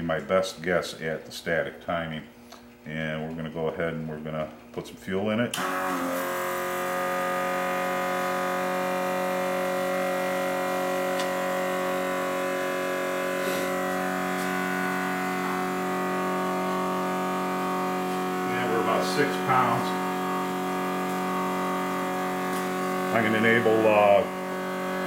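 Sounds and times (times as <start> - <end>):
electric fuel pump humming: 5.5 - 25.0.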